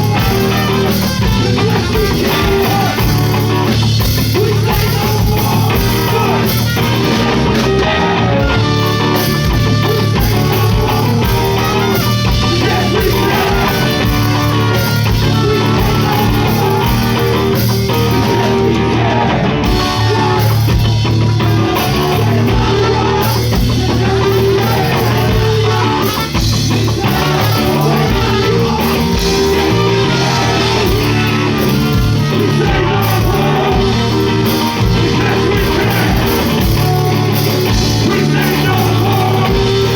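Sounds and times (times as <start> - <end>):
drum kit: 0.0 - 39.9
electric guitar: 0.0 - 39.9.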